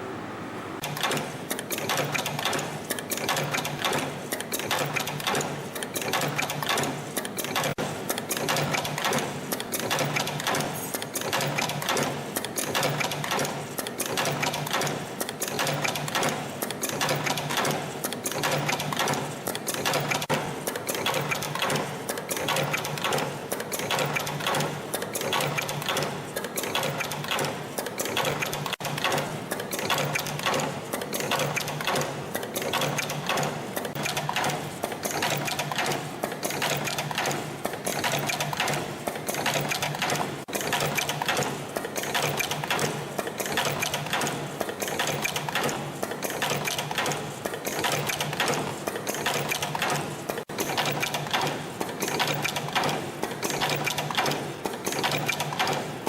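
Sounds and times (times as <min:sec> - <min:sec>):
spring machine mechanical clatter: 0:00.8 - 0:56.0.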